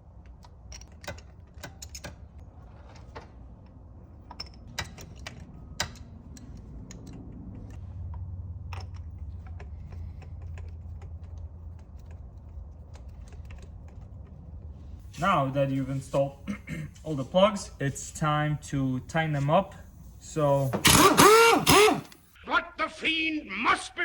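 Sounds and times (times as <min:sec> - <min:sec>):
hand tools clicking and tapping: 0:00.3 - 0:02.3, 0:04.3 - 0:14.7, 0:20.7 - 0:22.2.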